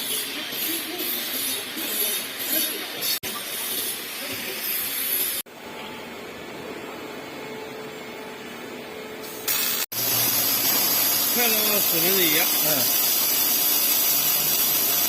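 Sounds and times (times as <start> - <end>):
welding arc hissing: 0.0 - 5.5, 9.2 - 15.0.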